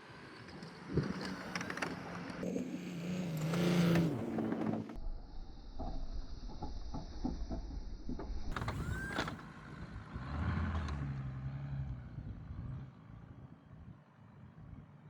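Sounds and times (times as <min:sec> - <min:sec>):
truck engine rumble: 0:08.0 - 0:13.9.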